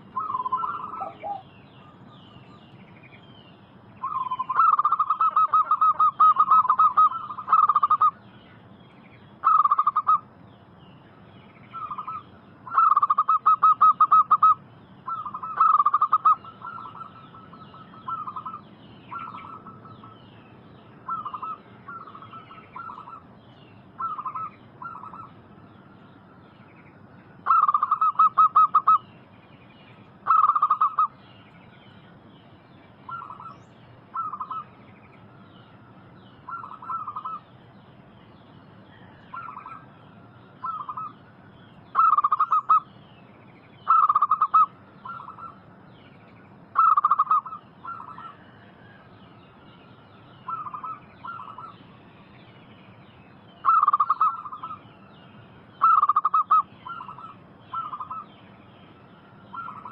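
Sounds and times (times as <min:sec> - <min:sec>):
dove cooing: 0:00.0 - 0:01.5, 0:04.0 - 0:08.2, 0:09.4 - 0:10.2, 0:11.8 - 0:19.9, 0:21.1 - 0:23.2, 0:24.0 - 0:25.3, 0:27.4 - 0:29.0, 0:30.2 - 0:31.1, 0:34.1 - 0:34.7, 0:36.5 - 0:37.4, 0:42.0 - 0:42.8, 0:43.9 - 0:45.6, 0:46.8 - 0:48.6, 0:50.5 - 0:51.8, 0:53.6 - 0:54.8, 0:55.8 - 0:58.2, 0:59.5 - 0:59.9
small birds twittering: 0:00.0 - 0:59.9.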